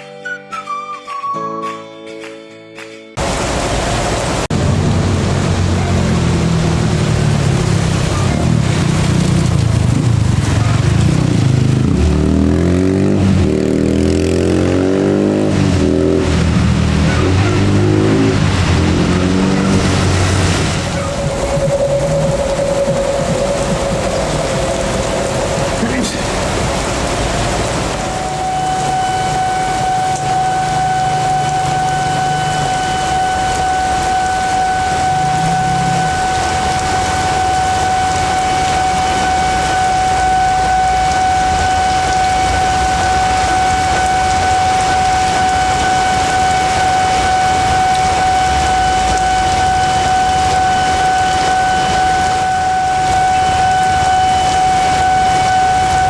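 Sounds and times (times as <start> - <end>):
heavy rain pouring: 3.2 - 56.0
low rumble: 15.7 - 29.0
steady high-pitched tone: 18.9 - 26.0, 28.2 - 56.0.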